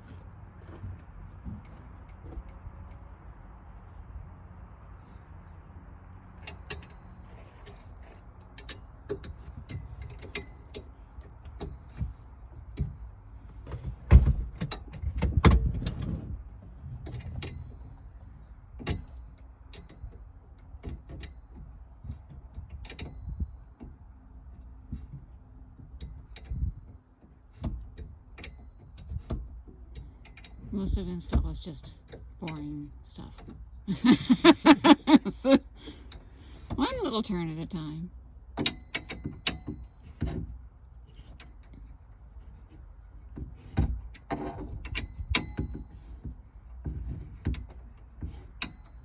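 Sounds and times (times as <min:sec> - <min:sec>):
hand tools clicking and knocking: 0:38.6 - 0:40.5.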